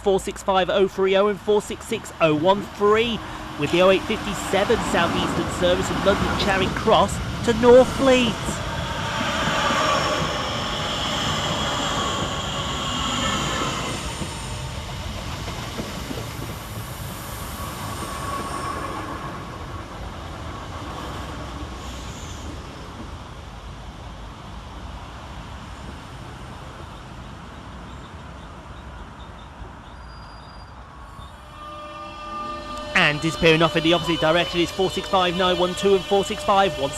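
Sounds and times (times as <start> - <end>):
train rail running noise: 0.0 - 36.9
wheel and brake squeal: 9.8 - 14.1, 29.3 - 35.0.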